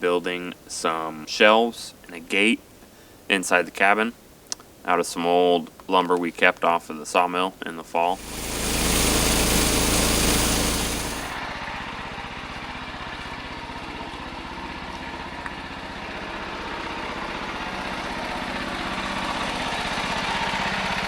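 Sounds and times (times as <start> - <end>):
small generator engine running: 8.2 - 21.0.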